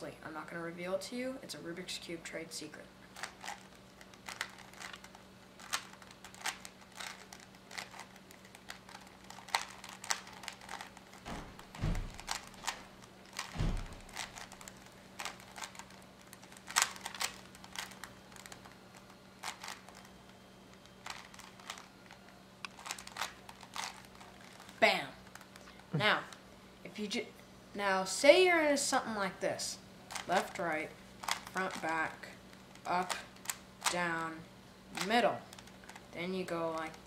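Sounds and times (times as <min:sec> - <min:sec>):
puzzle cube clicking: 0:03.2 - 0:20.1, 0:20.7 - 0:24.7, 0:32.7 - 0:34.3
low thumps: 0:11.3 - 0:14.4.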